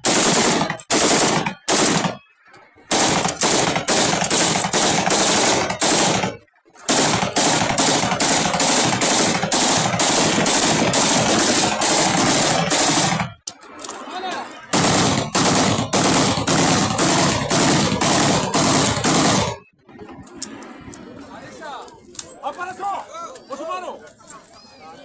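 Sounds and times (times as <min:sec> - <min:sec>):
automatic rifle fire: 0:00.0 - 0:02.2, 0:02.9 - 0:13.4, 0:14.7 - 0:19.6.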